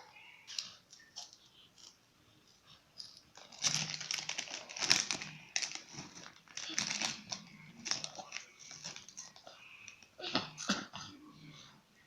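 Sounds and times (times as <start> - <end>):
plastic bag crinkling: 3.0 - 10.1.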